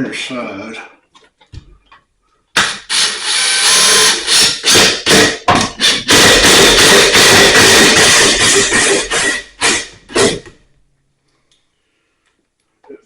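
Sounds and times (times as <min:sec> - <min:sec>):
power drill driving screws: 0:02.6 - 0:10.4.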